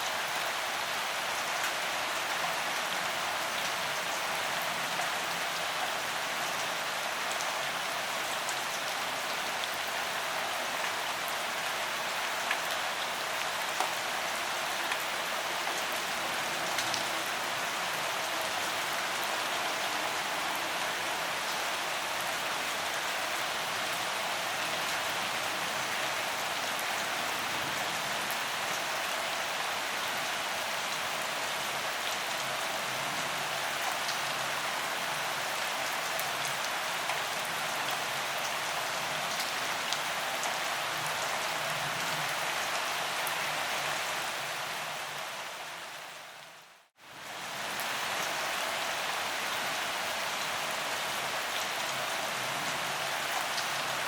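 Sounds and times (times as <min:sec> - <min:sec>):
gentle rain falling: 0:00.0 - 0:54.0.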